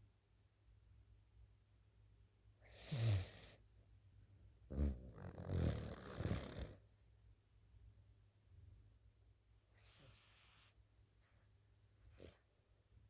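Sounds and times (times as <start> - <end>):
pet snoring: 2.6 - 3.6, 4.7 - 7.0.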